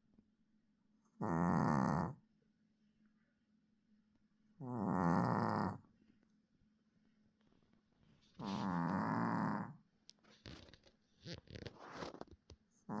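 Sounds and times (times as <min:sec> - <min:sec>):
puppy snoring: 0:01.2 - 0:02.2, 0:04.6 - 0:05.9, 0:08.4 - 0:09.8.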